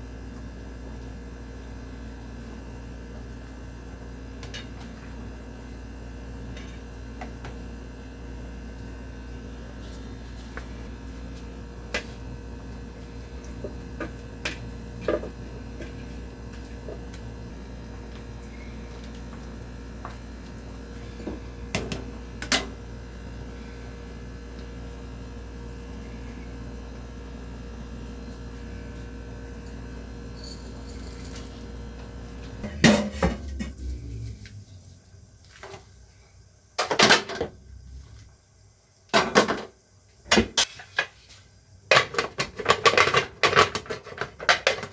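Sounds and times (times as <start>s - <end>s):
electrical hum: 0.0s - 39.0s
utensils and pots clinking: 32.6s - 33.8s.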